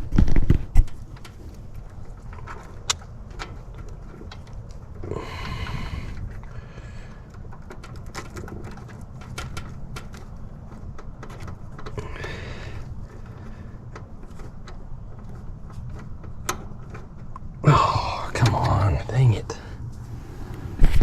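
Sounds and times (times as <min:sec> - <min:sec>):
steady low rumble: 0:00.0 - 0:07.3, 0:17.6 - 0:21.0
hands clicking and tapping wires: 0:00.0 - 0:17.5.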